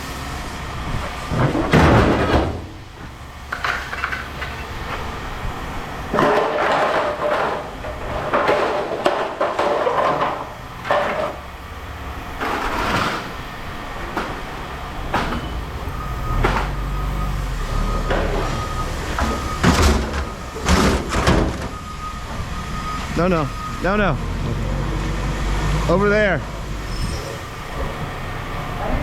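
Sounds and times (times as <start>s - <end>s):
scrap metal clanging: 6.1s - 11.4s
vehicle engine running: 10.2s - 29.0s
repeated high beep: 21.7s - 24.2s.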